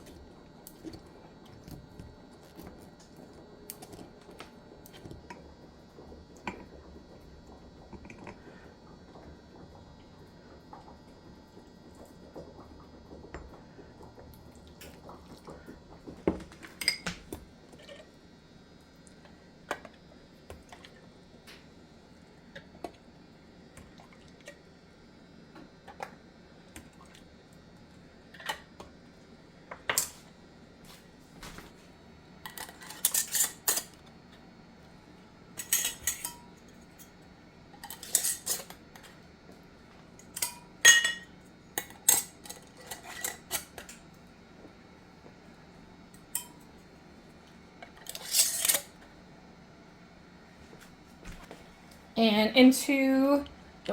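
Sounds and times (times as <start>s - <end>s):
dishes and utensils clattering: 35.6s - 36.5s, 37.8s - 39.1s, 40.3s - 44.0s, 47.9s - 49.0s.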